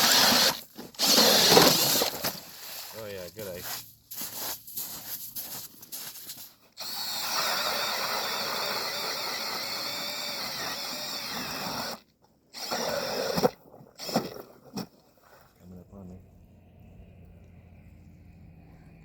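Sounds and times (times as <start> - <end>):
ice auger drilling: 0.0 - 3.0, 6.8 - 14.9.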